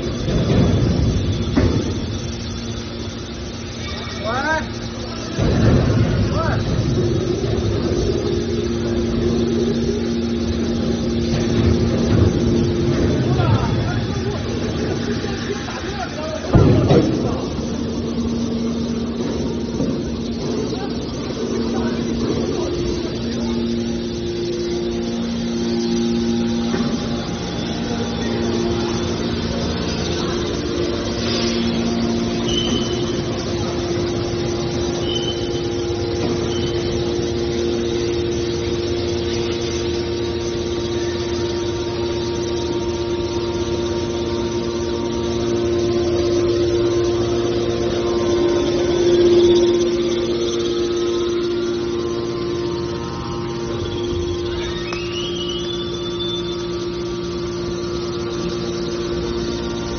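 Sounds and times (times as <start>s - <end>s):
hydraulic baler engine humming: 0.0s - 59.9s
short high squeaks: 31.2s - 33.4s, 35.0s - 35.8s, 47.6s - 56.8s.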